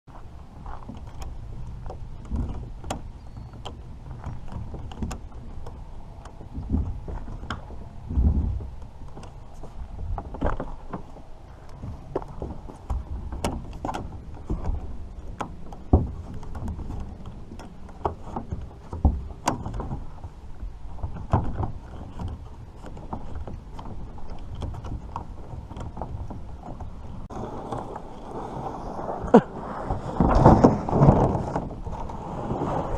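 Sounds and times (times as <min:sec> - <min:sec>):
steady low rumble: 0:00.1 - 0:32.9
paddle knocking against kayak: 0:01.8 - 0:27.9.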